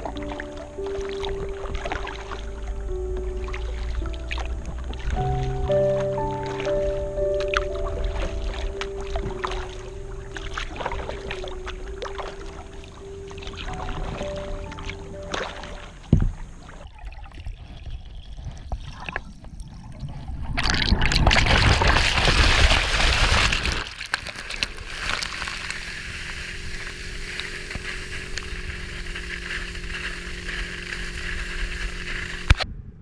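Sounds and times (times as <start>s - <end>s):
low hum: 0.0s - 23.4s, 24.7s - 33.0s
water splashing around a boat: 0.0s - 32.7s.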